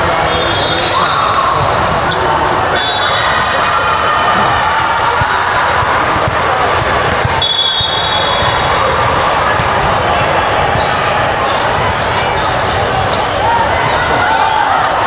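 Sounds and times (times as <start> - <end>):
crowd chatter in a hall: 0.0 - 15.0
sneakers squeaking on court: 0.3 - 4.5, 5.2 - 14.4
volleyball thudding: 5.1 - 11.0.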